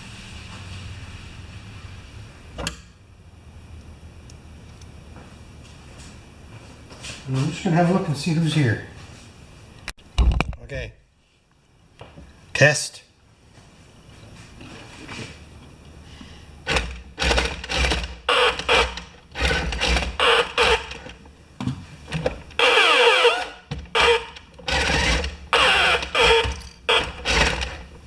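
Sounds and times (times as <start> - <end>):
toy electric motors whirring: 16.7 - 21.2, 22.6 - 27.9.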